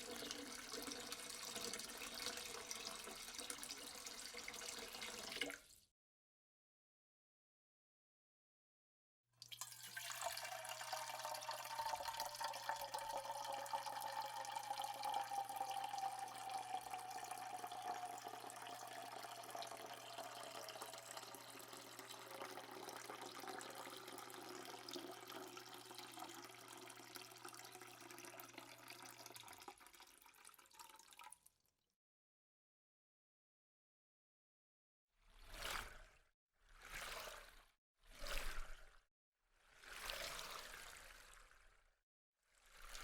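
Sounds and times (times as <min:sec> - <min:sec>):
water pouring with ringing tone: 0:00.0 - 0:05.6, 0:09.4 - 0:31.4.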